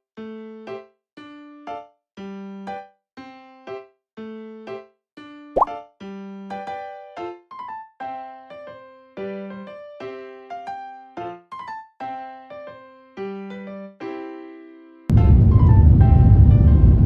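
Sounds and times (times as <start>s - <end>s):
electric piano chords: 15.1s - 17.0s.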